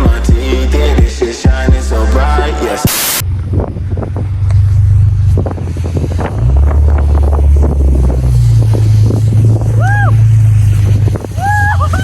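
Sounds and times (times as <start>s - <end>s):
engine droning while driving: 3.2s - 12.0s
wind buffeting microphone: 3.2s - 12.0s.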